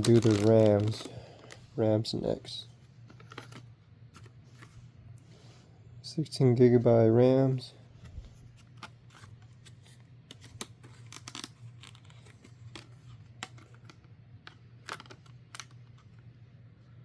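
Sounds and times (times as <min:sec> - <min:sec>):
plastic packaging crinkling: 0:00.0 - 0:01.7, 0:08.7 - 0:14.0.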